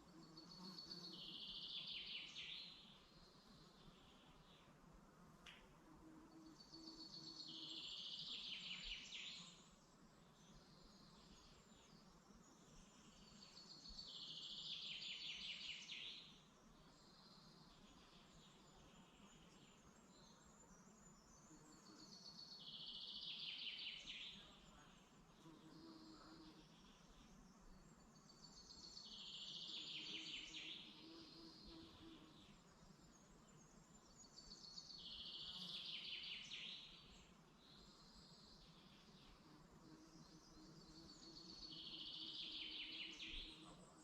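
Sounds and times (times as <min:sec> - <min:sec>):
faint background hiss: 0:00.0 - 0:44.0.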